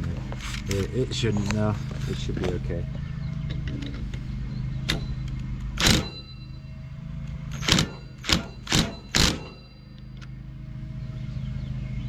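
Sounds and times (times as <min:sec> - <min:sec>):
steady low hum: 0:00.0 - 0:12.0
impact wrench bursts: 0:04.9 - 0:06.4, 0:07.5 - 0:09.9.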